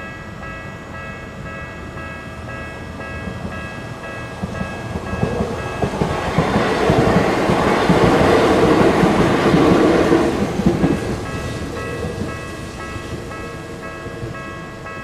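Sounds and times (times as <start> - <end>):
level crossing bell ringing: 0.0 - 6.3
train rumble: 0.0 - 15.0.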